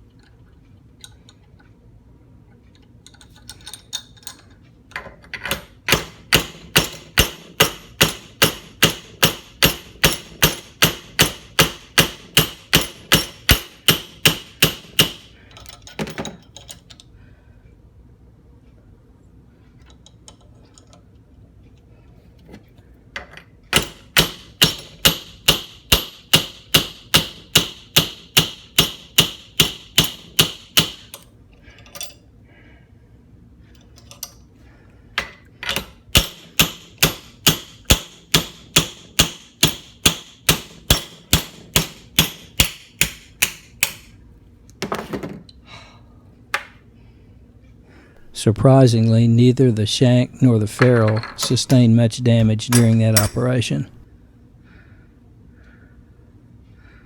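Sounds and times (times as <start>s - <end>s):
hammer striking metal: 5.9s - 15.3s, 23.7s - 31.2s, 36.2s - 44.1s, 52.7s - 53.5s.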